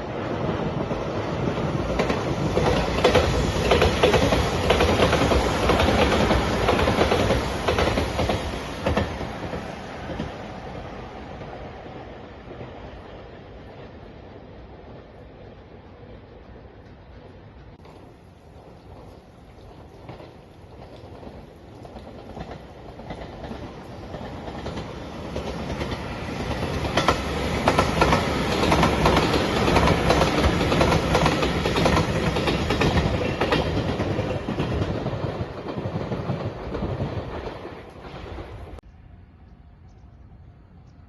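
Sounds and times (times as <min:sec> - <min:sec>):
train passing at speed: 0:00.0 - 0:41.0
wheels clicking over rail joints: 0:00.8 - 0:10.4, 0:16.3 - 0:38.9.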